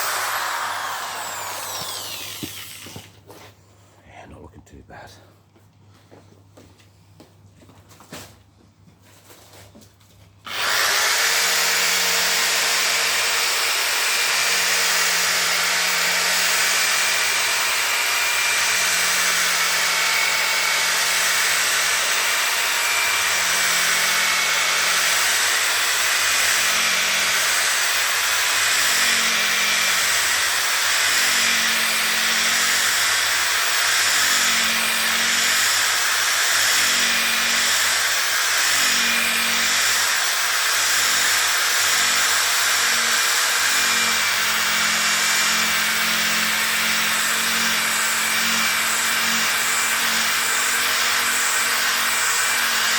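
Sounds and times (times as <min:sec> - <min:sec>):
power drill polishing: 0:00.0 - 0:03.2, 0:10.5 - 0:52.9.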